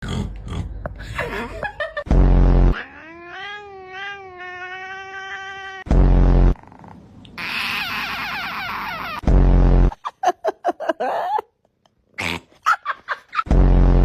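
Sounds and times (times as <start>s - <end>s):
cat yowling: 2.8s - 5.9s, 7.4s - 9.2s
loud buzzy blasts: 5.9s - 6.6s, 9.2s - 9.9s.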